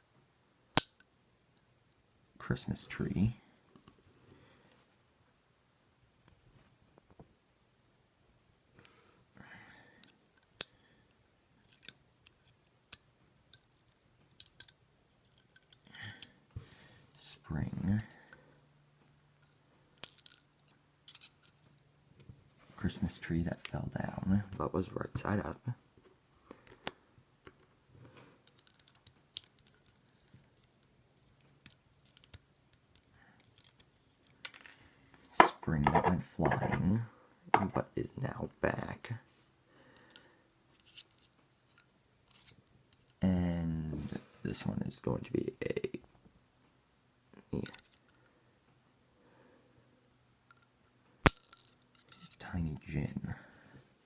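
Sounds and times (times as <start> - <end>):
small metallic clicks of lock pins: 11.6 - 16.3, 20.0 - 21.7, 28.4 - 34.7, 47.6 - 48.3.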